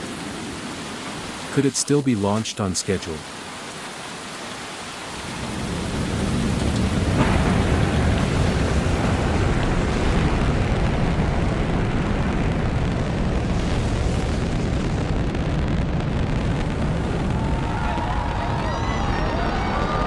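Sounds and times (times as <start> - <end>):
rain hiss: 0.0 - 10.0.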